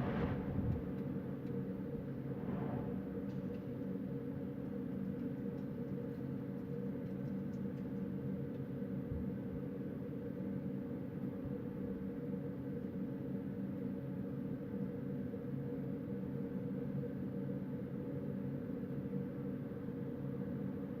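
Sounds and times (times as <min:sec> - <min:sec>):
wind blowing: 0:00.0 - 0:03.8
low even hum: 0:00.0 - 0:13.9.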